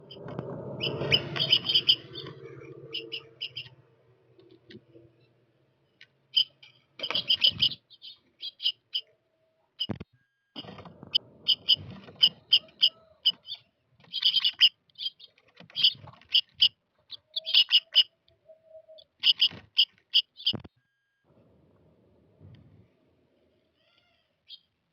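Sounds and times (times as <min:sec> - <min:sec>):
small birds chirping: 0:00.0 - 0:09.2, 0:10.6 - 0:20.7, 0:23.6 - 0:24.9.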